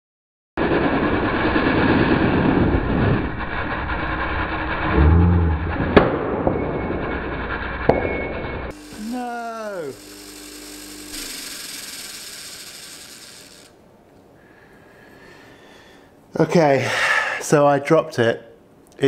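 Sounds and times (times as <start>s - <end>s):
polishing motor buffing wheel rushing: 8.7s - 13.7s.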